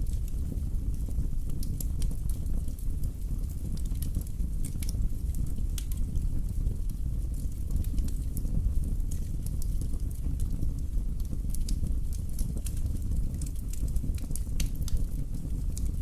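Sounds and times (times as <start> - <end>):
fire low rumble: 0.0 - 16.0
fire pops and crackles: 0.0 - 16.0.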